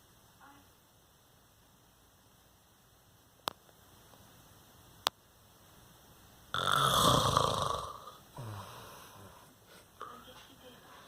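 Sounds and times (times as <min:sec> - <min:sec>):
faint room hum: 0:00.0 - 0:11.0
man snoring loudly: 0:06.6 - 0:09.4.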